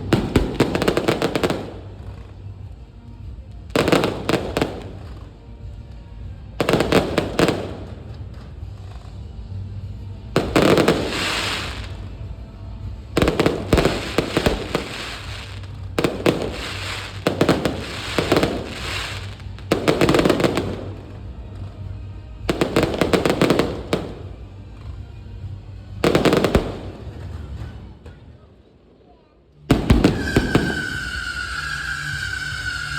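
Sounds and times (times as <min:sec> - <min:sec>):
firework crackling: 0:00.0 - 0:25.1, 0:25.9 - 0:27.9, 0:29.7 - 0:32.9
firework shells cracking: 0:13.2 - 0:21.0, 0:29.7 - 0:32.9.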